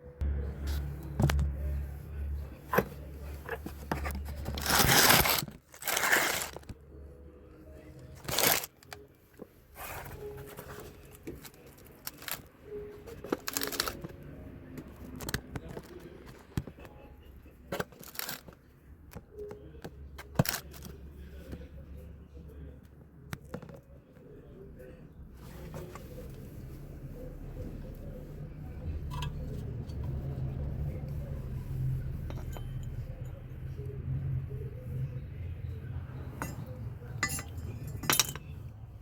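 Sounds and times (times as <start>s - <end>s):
rustling: 0.6s - 6.7s.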